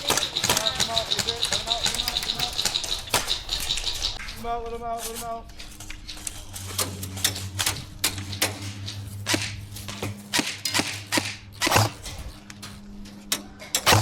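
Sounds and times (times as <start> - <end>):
steady low hum: 0.0 - 14.0
airsoft gunfire pops: 9.2 - 9.6, 10.3 - 12.1.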